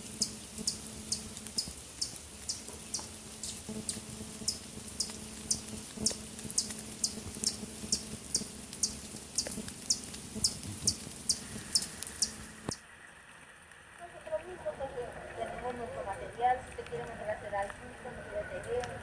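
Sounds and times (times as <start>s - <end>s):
small animal chirping: 0.0s - 12.5s.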